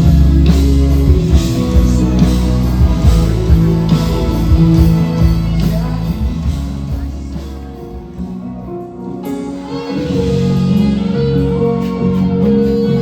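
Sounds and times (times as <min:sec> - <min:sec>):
electric guitar: 0:00.0 - 0:13.0
person singing: 0:00.0 - 0:13.0.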